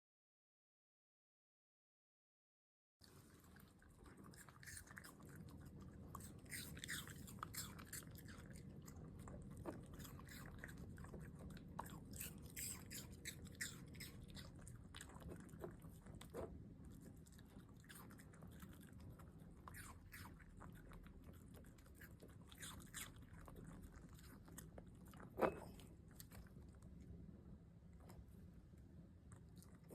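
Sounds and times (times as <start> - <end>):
dog chewing apple: 3.0 - 27.2.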